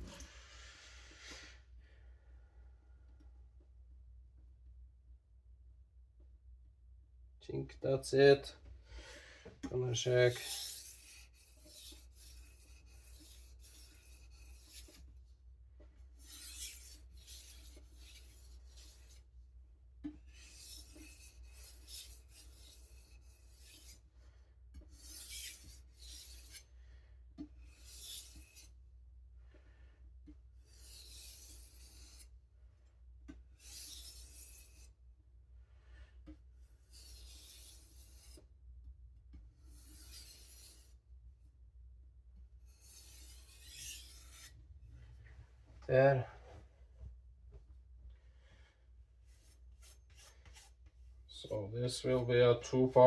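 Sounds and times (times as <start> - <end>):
knife blade rasping on whetstone: 9.9 - 15.2, 16.2 - 19.3, 20.2 - 24.1, 24.8 - 26.7, 27.6 - 28.8, 30.6 - 32.4, 33.6 - 35.0, 36.8 - 38.5, 39.6 - 41.0, 42.7 - 44.6, 49.3 - 50.8.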